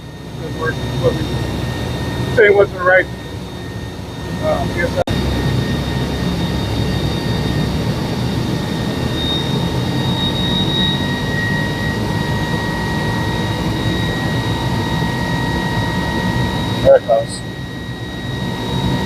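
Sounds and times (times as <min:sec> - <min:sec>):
fire pump high whine: 0:00.0 - 0:19.0.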